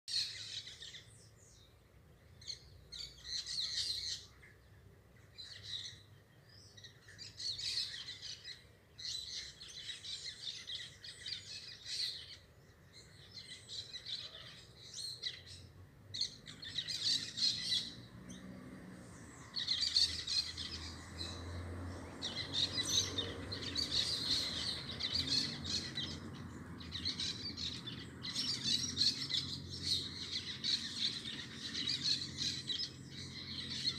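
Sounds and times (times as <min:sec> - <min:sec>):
parakeets chirping and chattering: 0:13.3 - 0:18.4, 0:19.0 - 0:33.9.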